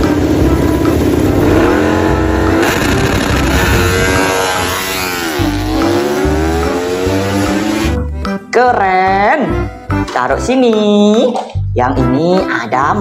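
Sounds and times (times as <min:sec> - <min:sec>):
racing motorcycle engine revving: 0:00.0 - 0:08.1.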